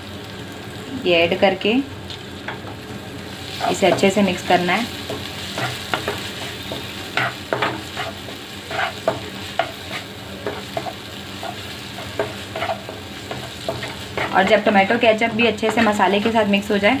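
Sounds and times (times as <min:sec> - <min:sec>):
oil sizzling: 0:00.0 - 0:17.0
spoon scraping a pan: 0:05.0 - 0:16.4.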